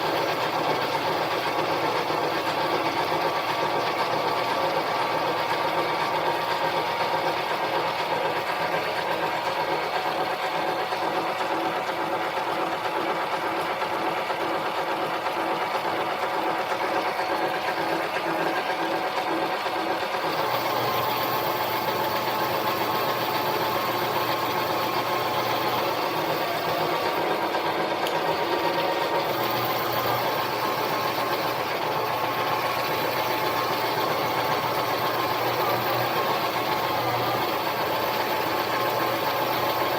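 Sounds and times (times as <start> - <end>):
metal lathe cutting: 0.0 - 9.8, 20.2 - 39.9.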